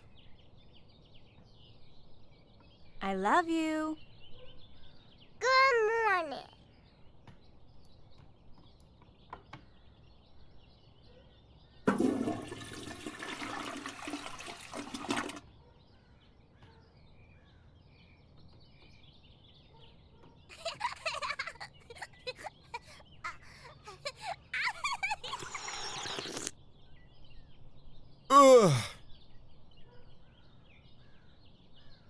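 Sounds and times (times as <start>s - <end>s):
faint high chirps: 25.1s - 26.5s.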